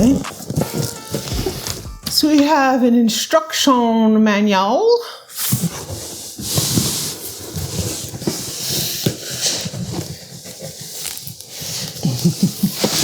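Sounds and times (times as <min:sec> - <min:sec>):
packaging rustling and crinkling: 0:00.0 - 0:02.4.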